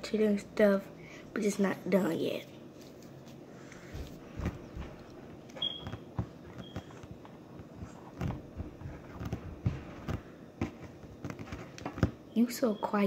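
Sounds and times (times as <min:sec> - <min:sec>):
high squeaks: 0:05.6 - 0:06.0.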